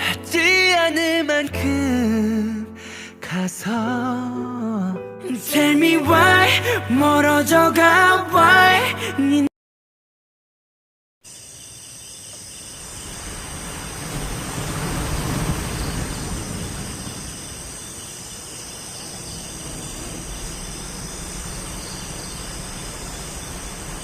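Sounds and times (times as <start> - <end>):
high thin insect-like tones: 11.3 - 14.2, 15.5 - 24.0
rushing hiss: 12.6 - 24.0.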